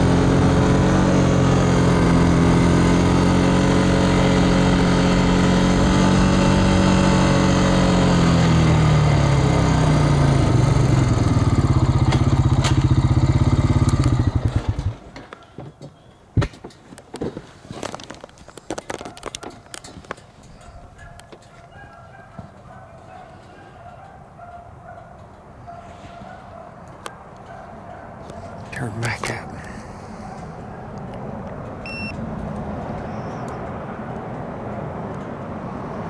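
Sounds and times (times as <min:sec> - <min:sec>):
engine running and slowing: 0:00.0 - 0:15.2.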